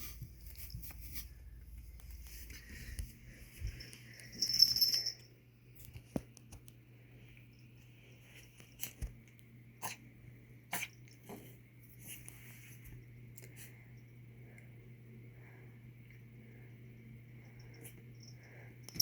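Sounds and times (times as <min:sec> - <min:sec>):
steady low hum: 0:00.0 - 0:19.0
cat sneezing: 0:10.7 - 0:11.0.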